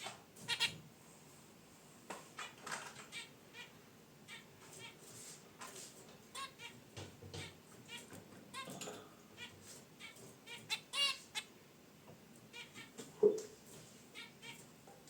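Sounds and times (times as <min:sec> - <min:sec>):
finches chirping: 0:00.5 - 0:00.8, 0:02.4 - 0:05.0, 0:06.3 - 0:11.5, 0:12.4 - 0:14.7.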